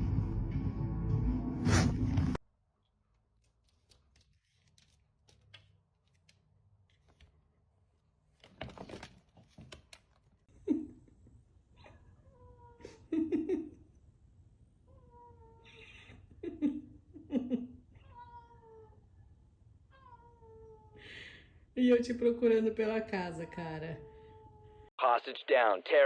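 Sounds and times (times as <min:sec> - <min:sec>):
cat meowing: 0:18.0 - 0:19.2, 0:19.9 - 0:21.0.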